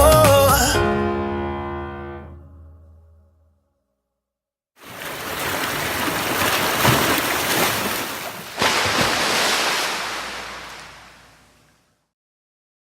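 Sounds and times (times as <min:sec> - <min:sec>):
waves breaking on shore: 0:04.8 - 0:11.9.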